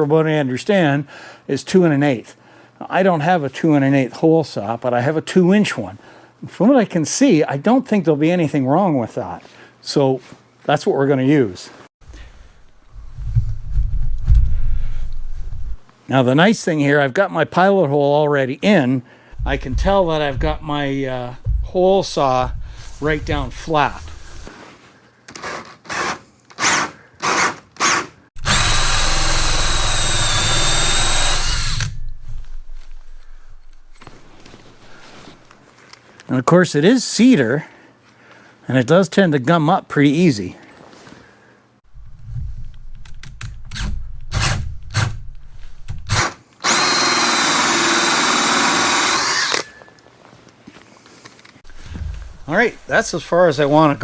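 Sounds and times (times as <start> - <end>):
power drill with hole saw whining: 25.4 - 32.1, 46.1 - 50.0.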